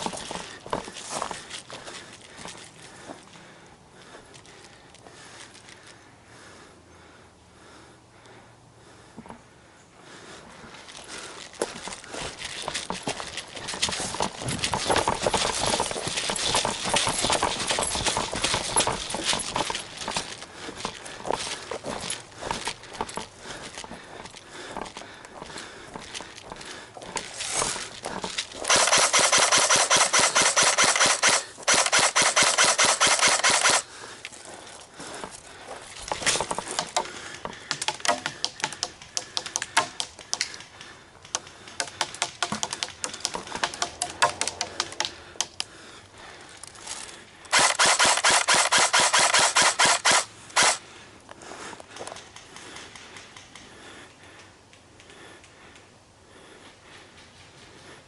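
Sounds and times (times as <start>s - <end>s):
gunfire: 28.7s - 33.8s, 47.5s - 50.8s.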